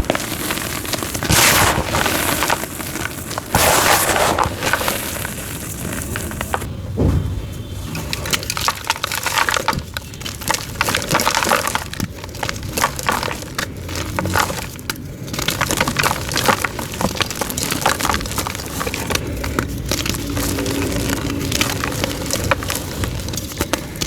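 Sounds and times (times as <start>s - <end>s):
chalk being crushed: 0.0s - 6.7s.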